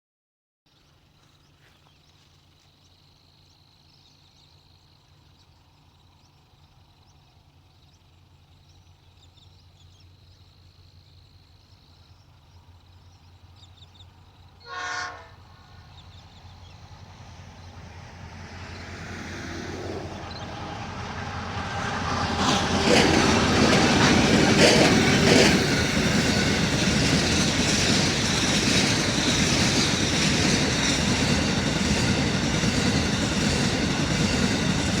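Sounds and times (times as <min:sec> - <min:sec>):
diesel locomotive engines: 0:01.0 - 0:35.0
train horn blast: 0:14.6 - 0:15.7.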